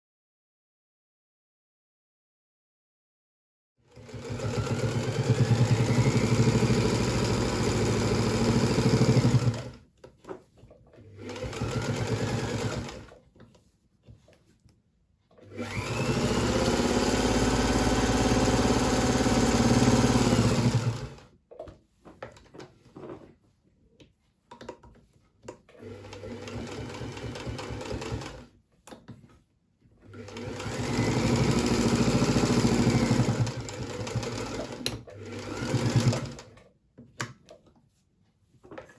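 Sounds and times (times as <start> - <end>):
sewing machine stitching: 3.9 - 9.8, 11.0 - 13.2, 15.4 - 21.3, 25.8 - 28.5, 30.0 - 36.6.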